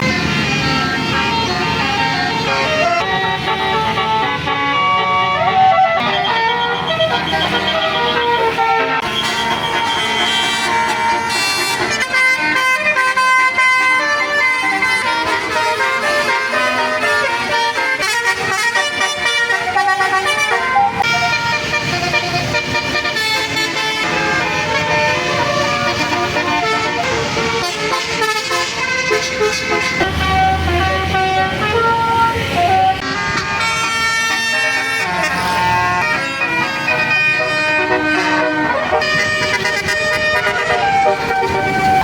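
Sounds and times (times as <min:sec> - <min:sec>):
multi-tone air horn tune: 0:00.0 - 0:42.0.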